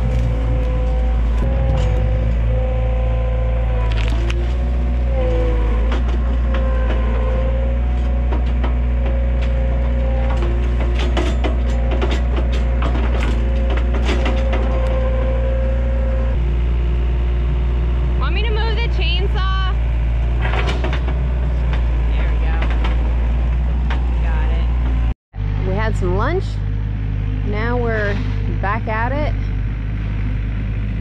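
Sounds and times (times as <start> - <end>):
wood cracking and splintering: 0.0 - 2.1
wavering machine whine: 0.0 - 19.7
track loader engine drone: 0.0 - 31.0.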